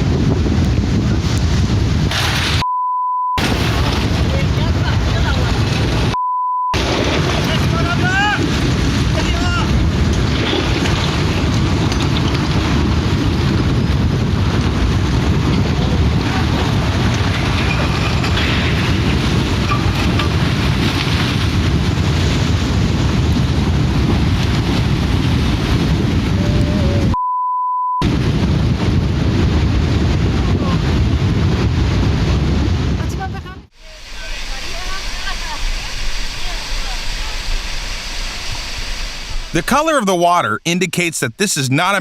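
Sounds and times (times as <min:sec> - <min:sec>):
wind roaring: 0:00.0 - 0:02.6, 0:03.4 - 0:06.2, 0:06.8 - 0:27.2, 0:28.0 - 0:40.1
censor bleep: 0:02.6 - 0:03.4, 0:06.1 - 0:06.8, 0:27.1 - 0:28.0.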